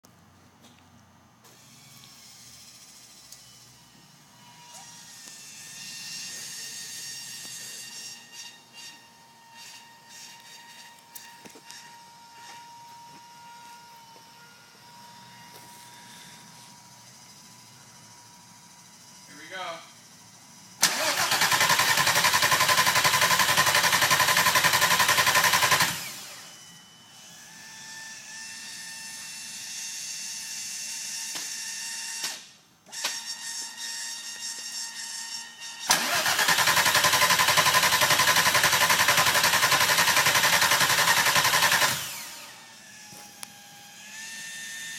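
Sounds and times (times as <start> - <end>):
engine cranking on starter: 20.8 - 26.2, 35.9 - 42.4.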